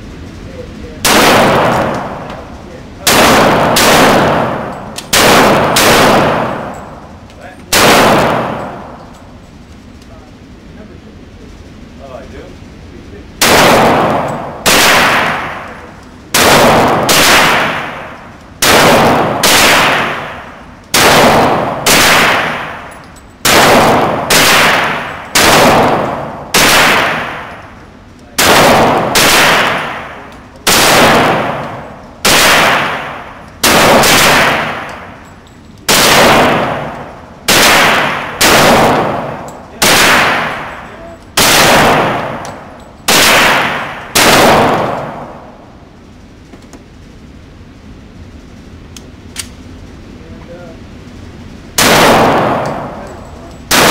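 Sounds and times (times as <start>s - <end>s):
pistol shots: 1.0s - 7.1s, 7.7s - 9.2s, 13.4s - 27.8s, 28.4s - 45.6s, 51.8s - 53.9s.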